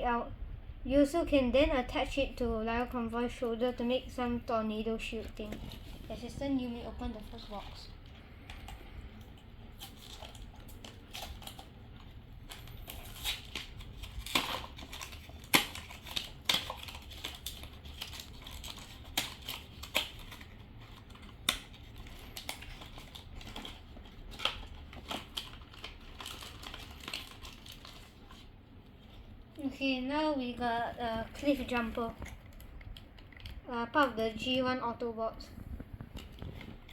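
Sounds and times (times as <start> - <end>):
packaging crinkling and tearing: 5.1 - 29.7, 30.9 - 33.7, 35.8 - 36.9.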